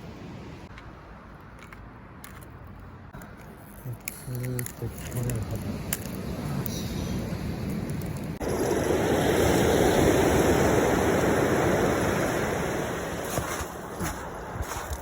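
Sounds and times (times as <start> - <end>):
waves washing on shore: 4.6 - 15.0.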